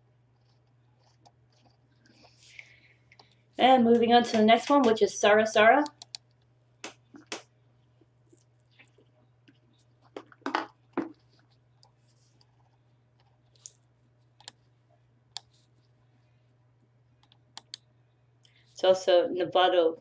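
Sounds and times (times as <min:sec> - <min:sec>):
faint low electrical hum: 0:00.0 - 0:20.0
computer mouse clicks: 0:05.8 - 0:07.4, 0:14.4 - 0:14.6, 0:17.2 - 0:17.9.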